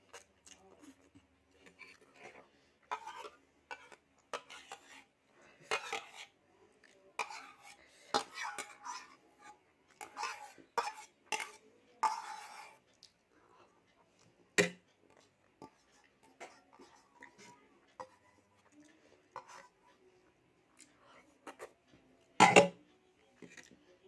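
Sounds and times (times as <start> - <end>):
cutlery clinking on plate: 22.4 - 22.8.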